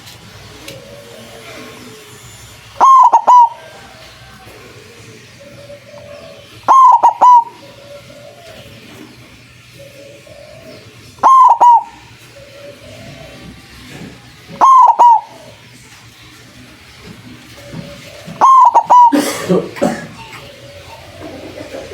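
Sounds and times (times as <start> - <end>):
dove cooing: 0.0 - 21.9
soft bird calls: 0.5 - 15.7, 17.0 - 19.2.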